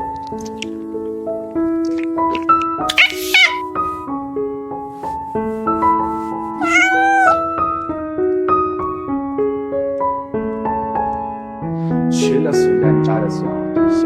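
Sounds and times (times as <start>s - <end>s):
cat meow: 2.9s - 3.6s, 6.6s - 7.5s.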